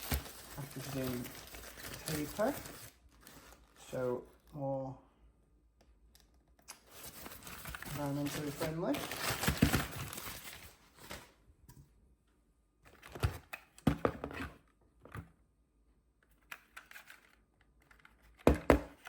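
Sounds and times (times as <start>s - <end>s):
packaging rustling: 0.0s - 4.0s, 6.8s - 11.4s.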